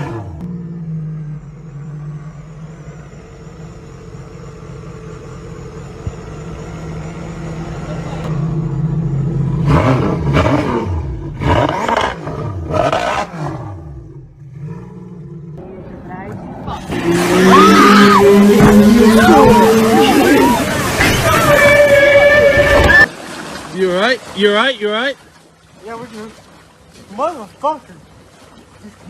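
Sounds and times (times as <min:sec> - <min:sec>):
engine running and revving: 0:00.0 - 0:23.1.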